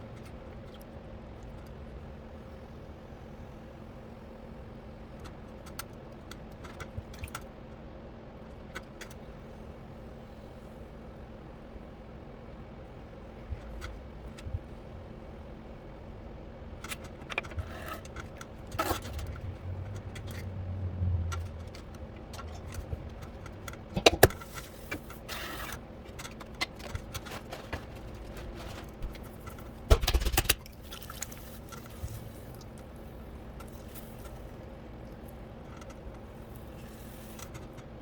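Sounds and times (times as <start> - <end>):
pottery wheel humming: 17.6 - 38.0.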